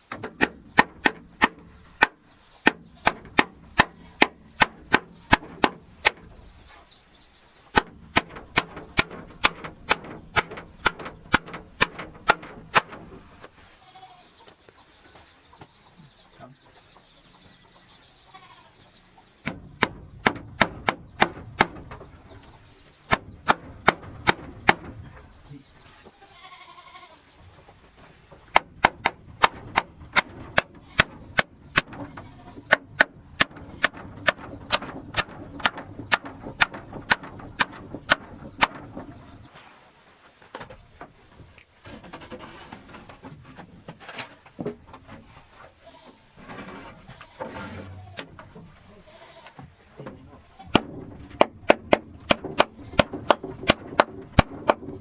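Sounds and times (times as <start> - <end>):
hammer blows: 19.5 - 22.4, 28.5 - 39.4, 50.7 - 55.0.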